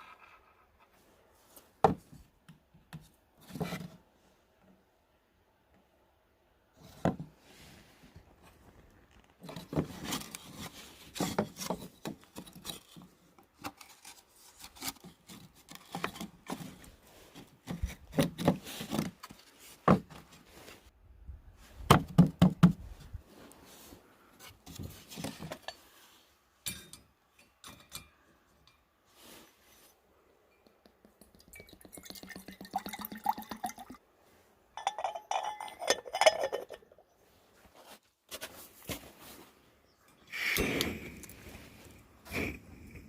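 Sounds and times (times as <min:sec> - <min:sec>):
camping gear being handled: 0:06.7 - 0:20.9, 0:22.9 - 0:26.5, 0:28.7 - 0:30.5, 0:34.1 - 0:43.0.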